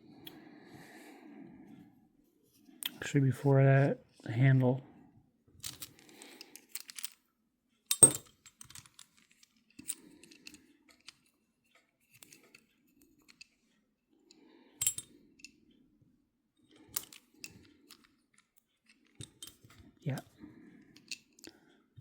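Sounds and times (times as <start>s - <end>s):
small metal parts clicking: 5.6s - 7.2s, 7.9s - 11.3s, 14.8s - 15.5s, 16.7s - 19.7s.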